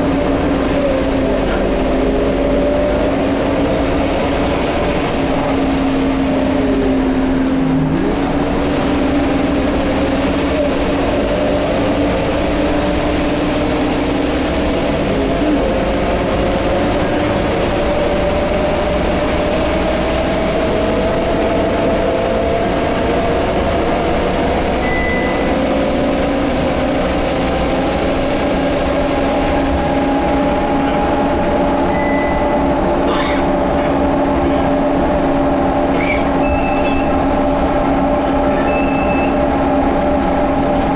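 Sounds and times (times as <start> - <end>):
bus engine running: 0.0 - 40.9
high whistle: 24.8 - 25.6, 31.9 - 32.6, 38.6 - 39.4.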